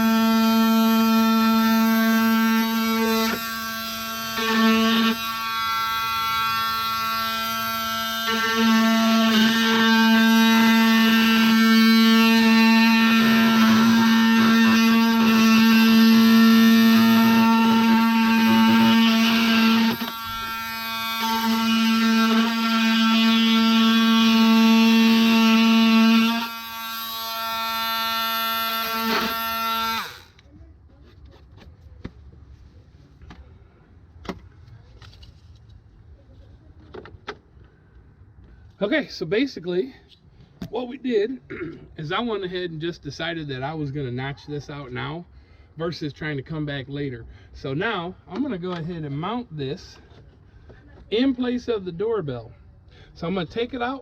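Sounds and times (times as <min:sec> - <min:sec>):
rough cutting noise: 0:00.0 - 0:30.4
power tool buzzing: 0:00.0 - 0:30.5.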